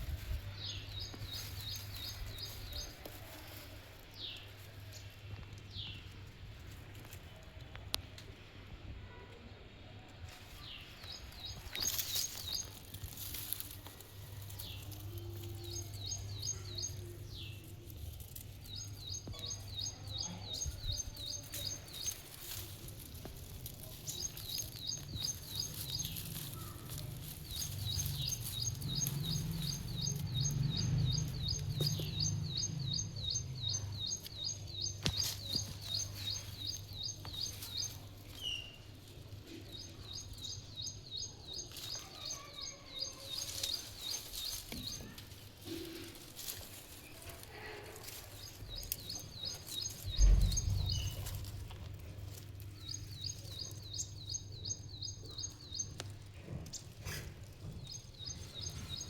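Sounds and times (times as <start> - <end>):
bird chirping: 10.6 - 23.1, 23.8 - 46.0, 48.0 - 59.0.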